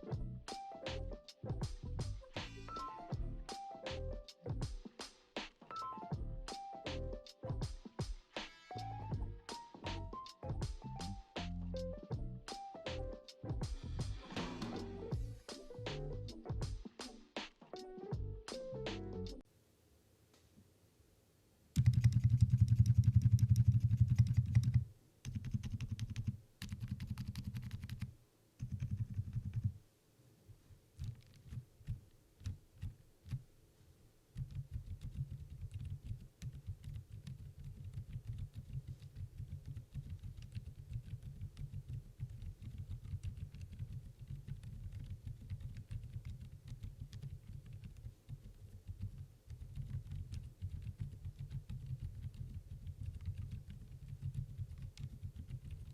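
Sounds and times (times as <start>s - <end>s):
soft keyboard typing: 21.8s - 29.8s, 31.0s - 33.5s, 34.3s - 55.9s.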